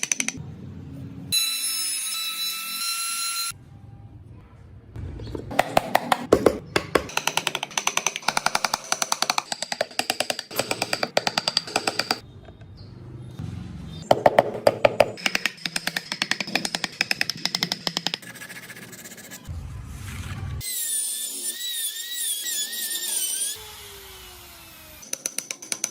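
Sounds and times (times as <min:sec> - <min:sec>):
carving tool tapping on wood: 0:05.6 - 0:12.2, 0:14.1 - 0:18.2.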